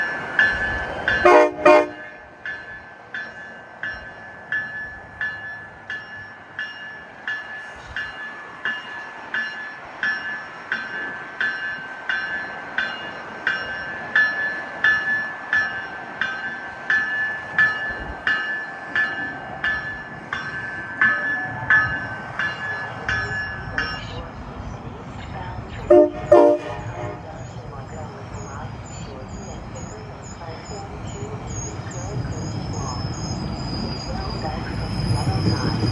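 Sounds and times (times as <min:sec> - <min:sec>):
bell ringing steadily: 0:00.0 - 0:24.4, 0:25.4 - 0:35.9
low rumble of train: 0:00.0 - 0:35.9
train horn blasts: 0:01.2 - 0:02.4, 0:25.8 - 0:27.5.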